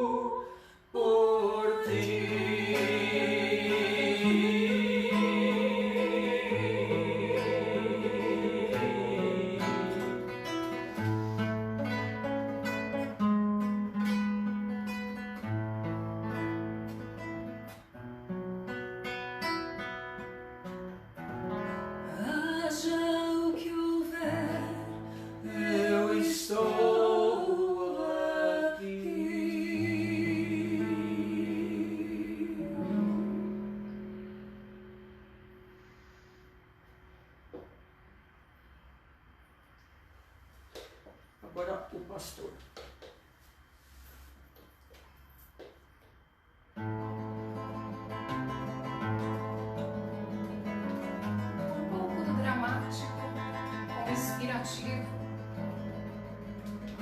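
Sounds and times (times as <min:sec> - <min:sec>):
person singing: 0:00.0 - 0:10.6, 0:22.1 - 0:33.9
acoustic guitar: 0:00.0 - 0:57.0.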